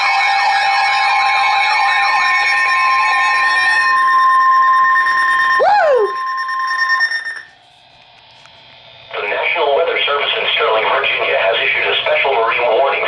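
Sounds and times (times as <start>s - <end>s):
steady high-pitched alarm tone: 0.0s - 7.8s
short falling whoop: 5.6s - 6.2s.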